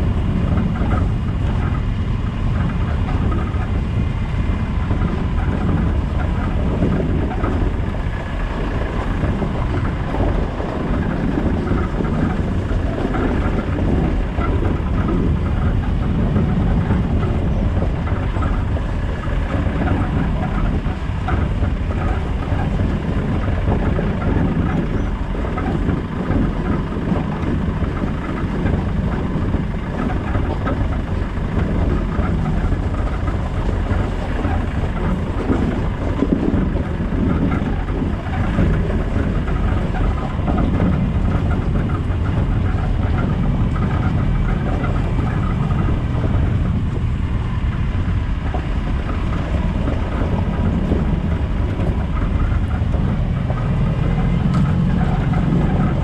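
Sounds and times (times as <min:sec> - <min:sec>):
diesel engine running: 0:00.0 - 0:56.0
light clatter: 0:00.0 - 0:56.0.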